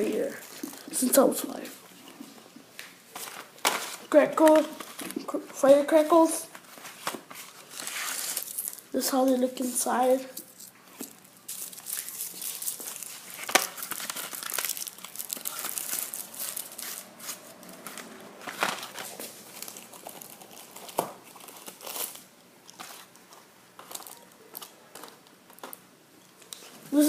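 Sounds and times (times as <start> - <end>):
packaging crinkling and tearing: 3.1 - 5.3, 6.6 - 9.4, 10.4 - 26.7.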